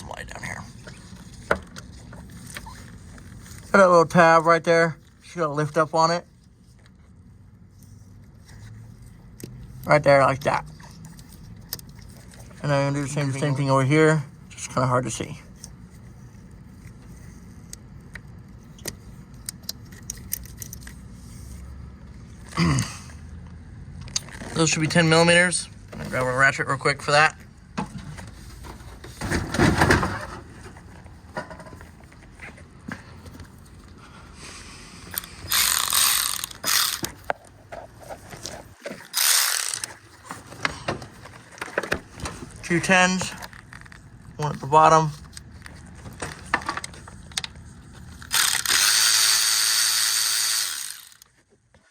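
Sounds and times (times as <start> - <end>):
socket ratchet clicking: 35.5 - 37.1, 48.3 - 51.2.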